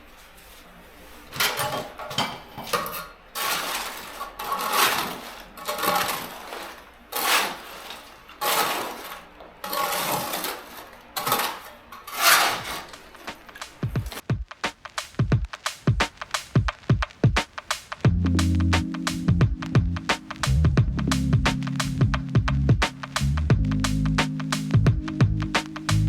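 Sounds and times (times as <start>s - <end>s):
brick rubble scraping and clinking: 1.4s - 13.1s.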